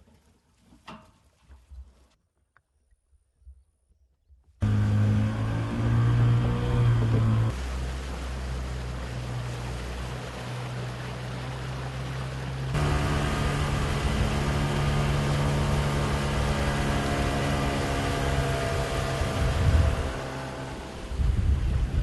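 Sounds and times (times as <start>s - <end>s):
engine humming: 4.6s - 22.0s.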